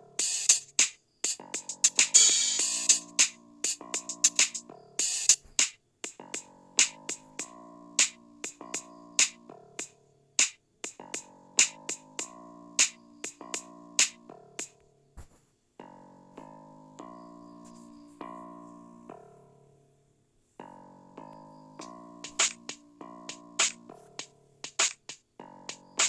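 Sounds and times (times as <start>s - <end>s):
drum-machine beat: 0.0s - 14.7s, 21.8s - 26.0s
held synthesizer chords: 20.6s - 24.2s.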